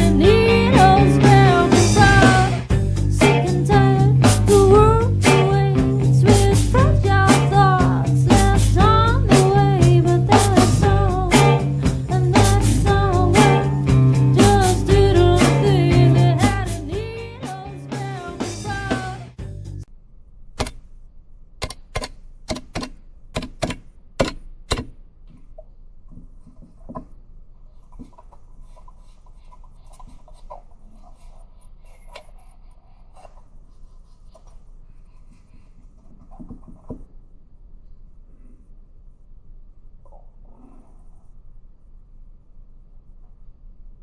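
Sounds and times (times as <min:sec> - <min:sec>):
song with singing and guitar: 0:00.0 - 0:19.4.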